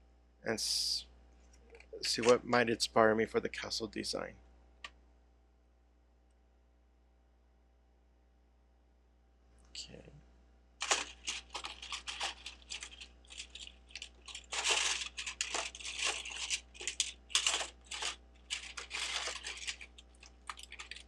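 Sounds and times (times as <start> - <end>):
plastic pieces clicking and rattling: 10.8 - 21.0
rustling of plastic pieces: 10.8 - 21.0.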